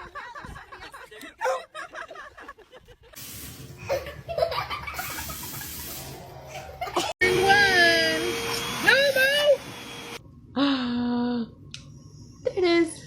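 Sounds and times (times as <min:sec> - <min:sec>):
laughter: 0:00.0 - 0:03.2, 0:03.8 - 0:07.2.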